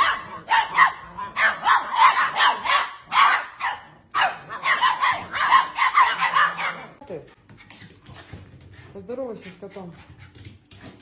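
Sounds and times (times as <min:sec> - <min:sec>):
dog barking: 0:00.0 - 0:07.0.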